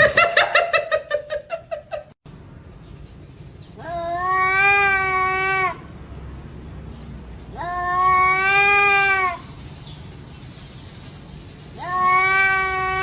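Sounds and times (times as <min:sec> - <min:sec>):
cat yowling: 0:03.8 - 0:05.8, 0:07.6 - 0:09.4, 0:11.8 - 0:13.0.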